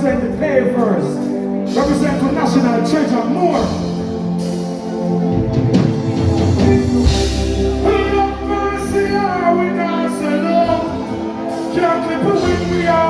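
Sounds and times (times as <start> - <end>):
drums: 0.0 - 13.0
live band music: 0.0 - 13.0
held bass note: 5.3 - 9.4.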